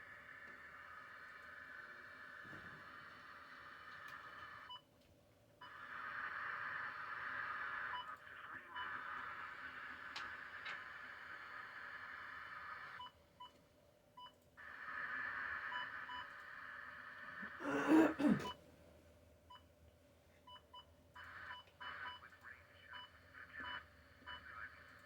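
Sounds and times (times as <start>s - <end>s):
radio static hiss: 5.8s - 13.0s.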